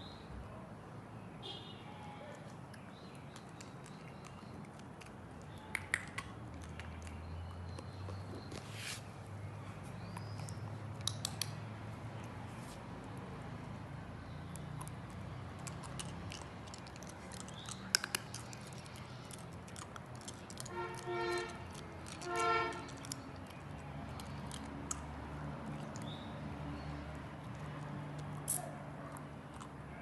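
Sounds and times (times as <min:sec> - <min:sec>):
puppy licking and chewing: 0:02.4 - 0:08.6, 0:14.4 - 0:30.0.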